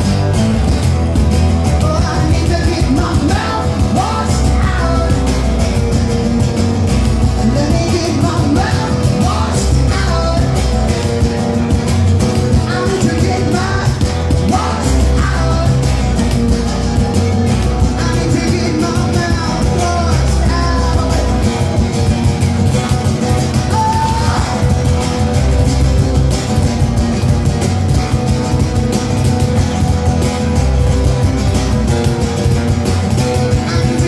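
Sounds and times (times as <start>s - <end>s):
bass: 0.0s - 34.0s
guitar: 0.0s - 34.0s
person singing: 1.7s - 5.9s, 7.3s - 11.4s, 12.5s - 21.9s, 23.5s - 25.3s.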